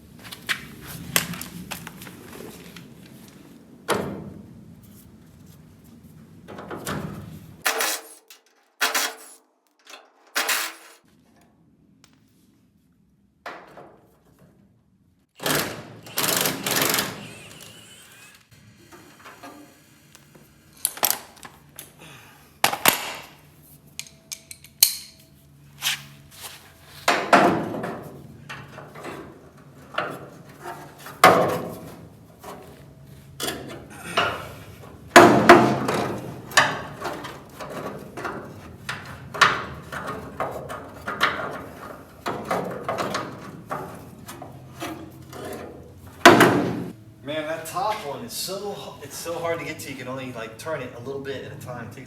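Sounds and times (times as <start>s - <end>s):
wrench clicking and clanking: 24.0s - 25.2s.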